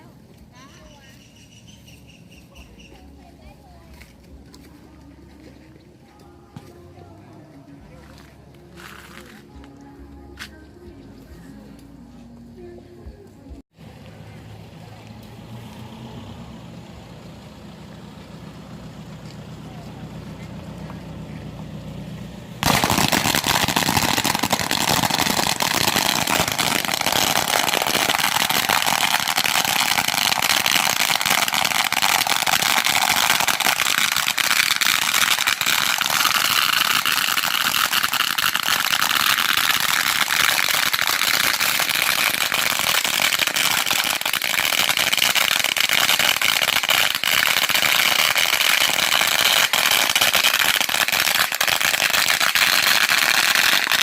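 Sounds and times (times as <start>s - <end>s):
string of firecrackers crackling: 2.4s - 10.6s, 22.6s - 54.0s.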